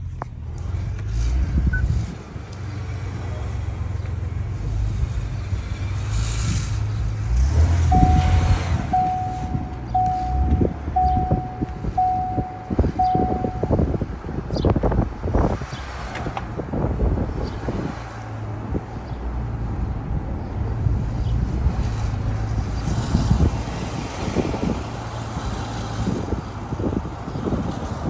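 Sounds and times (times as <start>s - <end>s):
single-tone warning chime: 7.9s - 13.9s.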